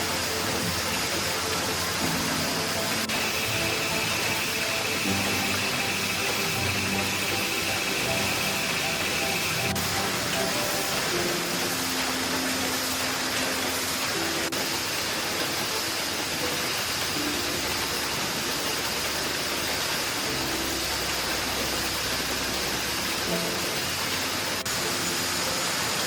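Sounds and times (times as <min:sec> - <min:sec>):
factory machinery din: 0:00.0 - 0:14.6
faint background music: 0:00.0 - 0:26.0.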